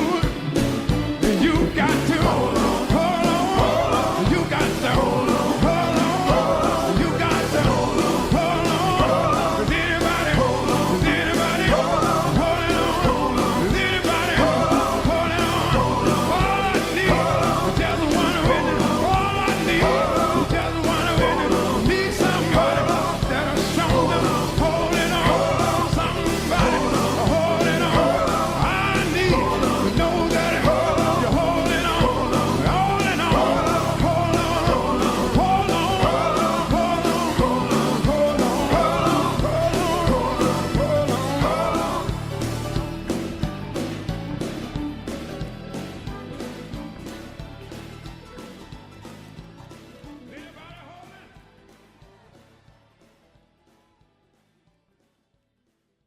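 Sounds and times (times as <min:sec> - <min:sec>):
rock music with shouted vocals: 0:00.0 - 0:54.1.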